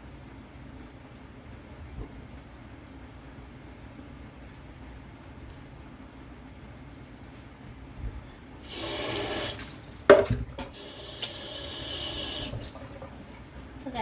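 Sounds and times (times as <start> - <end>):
kitchen tap running: 8.6 - 14.0.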